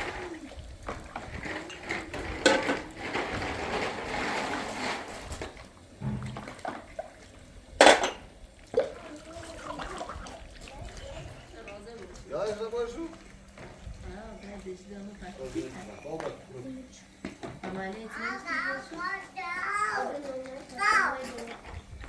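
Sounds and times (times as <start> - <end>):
dishes and utensils clattering: 0.0 - 6.9, 7.8 - 9.0, 20.7 - 22.0
running water: 0.0 - 22.0.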